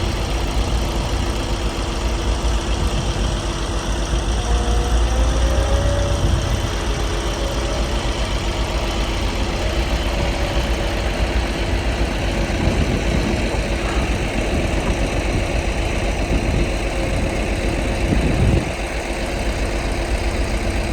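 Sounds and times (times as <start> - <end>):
compactor diesel engine rumble: 0.0 - 20.9.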